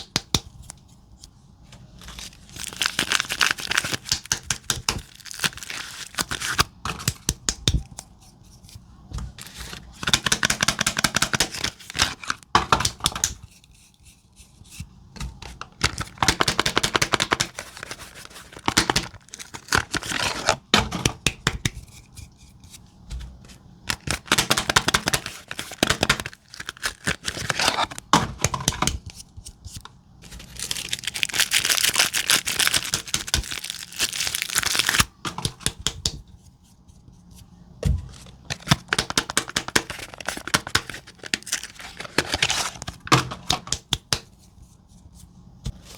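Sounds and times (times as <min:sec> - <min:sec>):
wrapper crinkling and tearing: 0:02.0 - 0:06.7, 0:15.8 - 0:20.6, 0:23.9 - 0:28.1, 0:30.2 - 0:35.2, 0:38.5 - 0:43.0.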